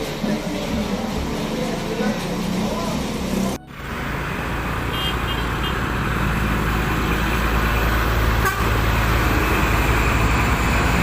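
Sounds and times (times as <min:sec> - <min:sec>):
bus engine and road rumble: 0:00.0 - 0:11.0
bus horn toots: 0:04.9 - 0:05.9, 0:08.3 - 0:08.9.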